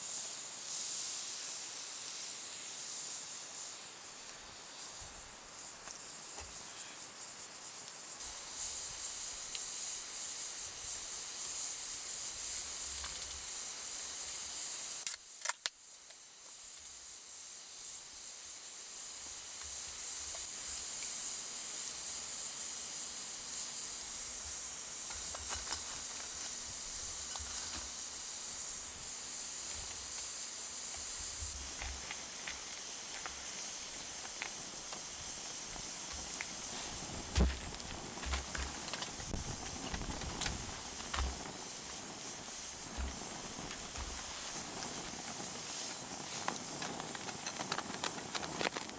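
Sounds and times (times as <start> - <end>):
campfire crackling and hissing: 0.0 - 48.9.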